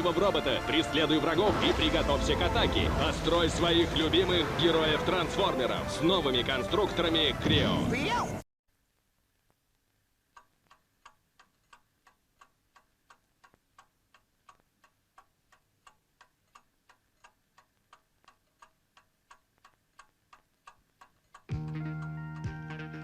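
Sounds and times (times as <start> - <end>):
alarm clock ticking: 10.7 - 23.0.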